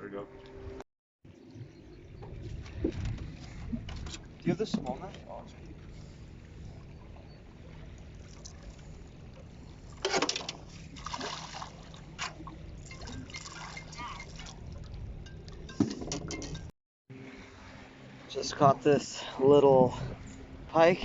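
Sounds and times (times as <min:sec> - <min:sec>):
water splashing beside boat: 0:01.3 - 0:16.7.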